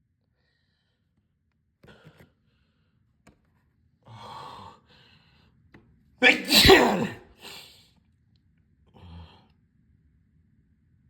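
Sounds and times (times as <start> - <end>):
person gasping before a sneeze: 6.2 - 7.8.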